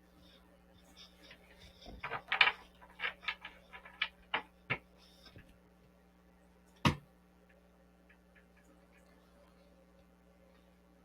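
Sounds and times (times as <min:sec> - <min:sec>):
cards clicking and rustling: 0:01.8 - 0:04.8.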